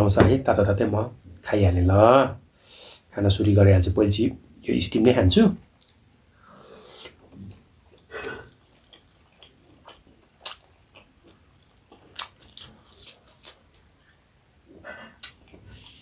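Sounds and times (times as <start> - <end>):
chewing and wet mouth noises: 6.6 - 14.2, 15.1 - 15.7.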